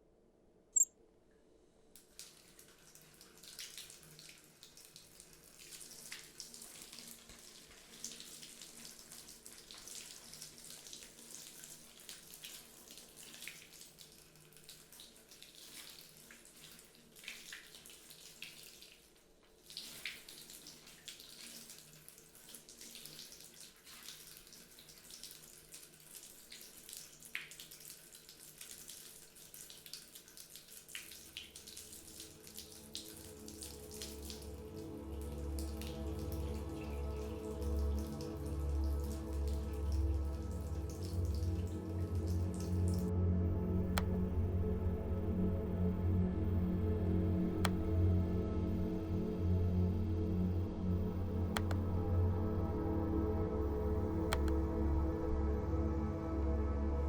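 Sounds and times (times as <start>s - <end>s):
faint running water splashing: 2.1s - 43.1s.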